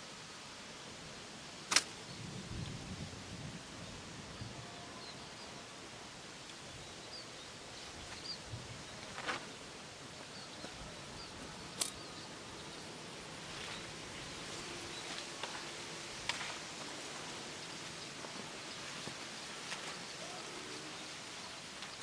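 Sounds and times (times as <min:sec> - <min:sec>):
high chirps of birds or insects: 0:00.0 - 0:22.0
steady background hiss: 0:00.0 - 0:22.0
sharp clicks: 0:01.7 - 0:02.0, 0:11.8 - 0:12.0.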